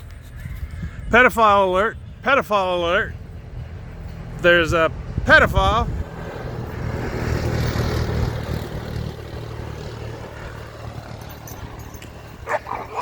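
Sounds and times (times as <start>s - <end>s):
vehicle driving past: 3.1s - 13.0s.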